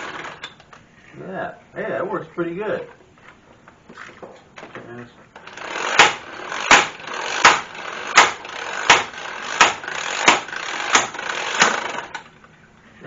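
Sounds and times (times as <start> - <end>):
impact wrench motor whirring: 0.0 - 0.6, 5.4 - 12.4
impact wrench blows: 5.4 - 12.4.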